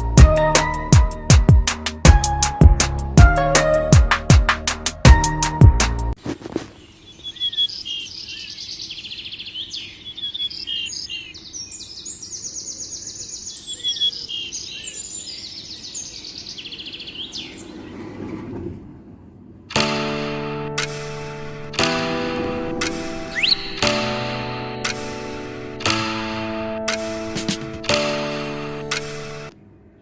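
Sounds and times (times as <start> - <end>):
bird chirping: 6.7 - 18.4, 22.4 - 25.8.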